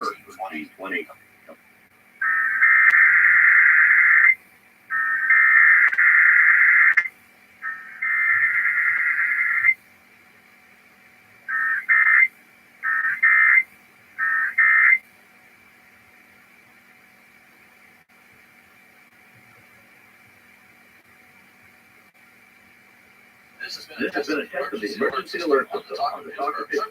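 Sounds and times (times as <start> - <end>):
screechy digital data bursts: 2.2 - 9.8, 11.5 - 15.0.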